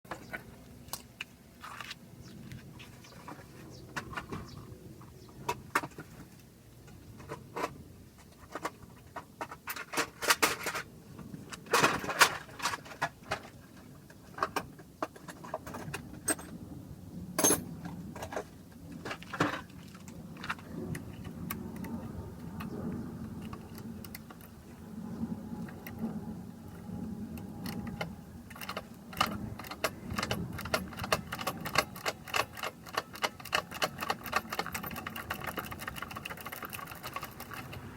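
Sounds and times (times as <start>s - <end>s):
metallic clinks and clatter: 17.4s - 17.7s.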